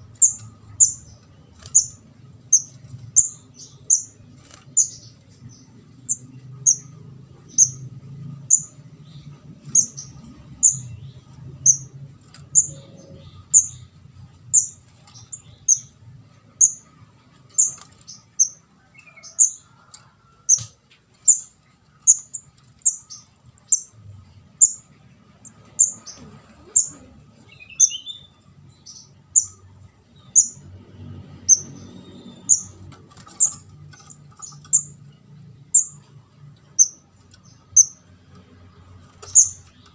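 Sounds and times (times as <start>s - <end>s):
bird high chirps: 25.6s - 30.7s, 31.4s - 35.0s, 35.7s - 38.1s, 39.1s - 39.9s.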